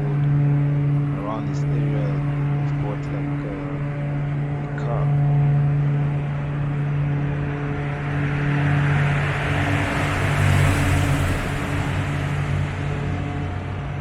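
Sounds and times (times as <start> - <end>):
steady low hum: 0.0 - 14.0
car driving past: 5.4 - 14.0.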